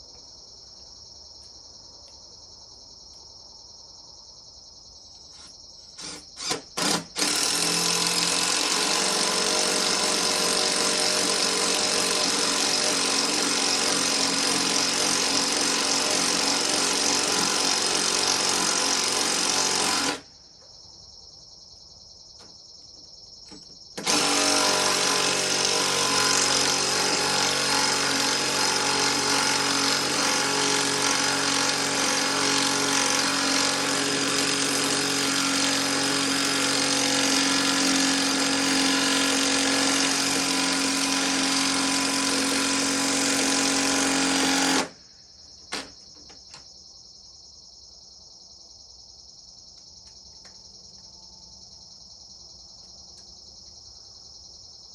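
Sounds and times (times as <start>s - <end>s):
crickets chirping: 0.0s - 24.0s, 44.9s - 54.9s
cordless drill running: 6.0s - 20.2s, 24.0s - 45.0s.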